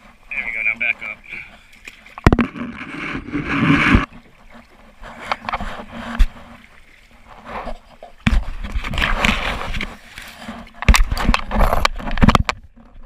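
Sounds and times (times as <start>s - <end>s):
water splashing around kayak: 0.0s - 13.0s
kayak knock: 1.8s - 4.2s.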